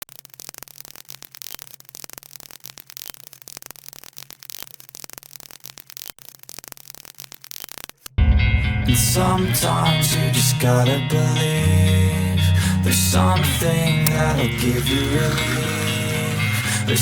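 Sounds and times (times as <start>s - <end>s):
crackling static: 0.0s - 10.4s, 13.3s - 17.0s
low hum: 8.2s - 17.0s.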